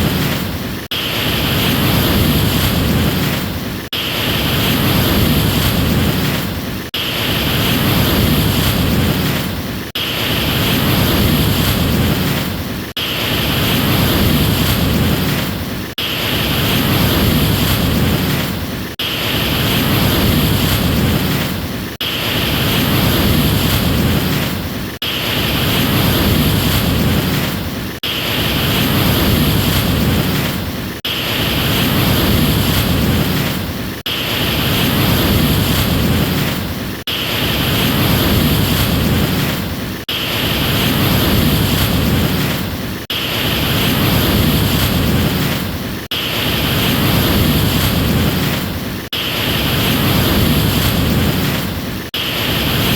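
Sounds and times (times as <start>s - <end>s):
ocean waves rushing: 0.0s - 52.9s.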